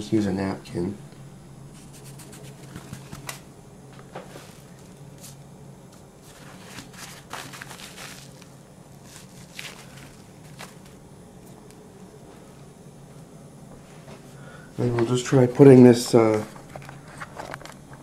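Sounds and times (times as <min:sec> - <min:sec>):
low hum: 0:00.0 - 0:18.0
paper napkin rubbing rubber belt: 0:01.7 - 0:03.4, 0:06.2 - 0:11.0.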